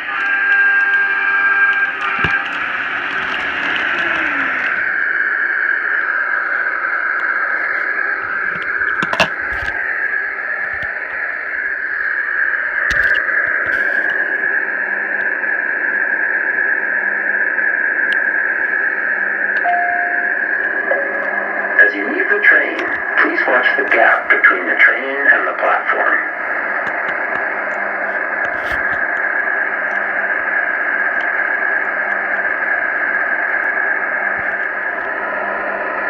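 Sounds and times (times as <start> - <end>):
train car running noise: 0.0 - 36.0.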